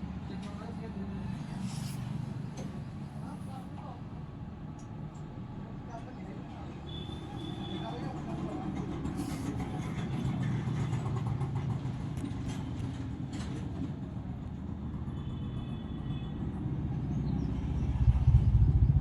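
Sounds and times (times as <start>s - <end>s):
low mechanical rumble: 17.6s - 19.0s.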